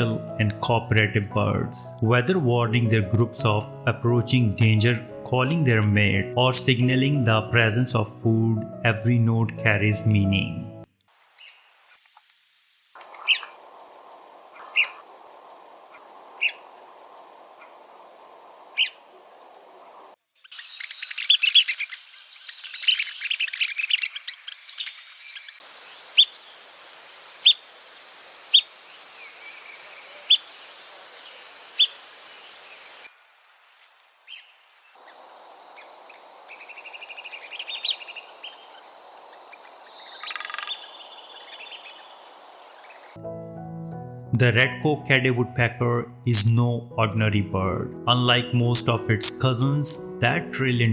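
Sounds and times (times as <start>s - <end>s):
faint steady hiss: 0.0s - 50.9s
woodpeckers calling: 11.4s - 11.8s, 13.0s - 13.8s, 14.5s - 33.1s, 34.2s - 44.1s
woodpeckers squeaky chattering: 20.4s - 25.6s, 26.2s - 26.6s, 28.5s - 33.0s, 36.5s - 38.9s, 39.5s - 43.2s.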